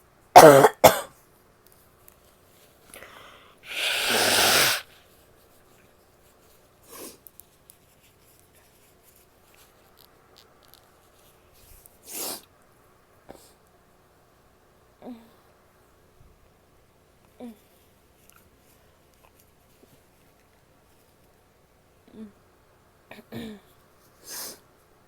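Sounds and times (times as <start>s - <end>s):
quiet nasal sounds: 2.9s - 5.2s
woman breathing in: 3.0s - 4.8s
forceful nasal breath blast: 3.0s - 5.0s.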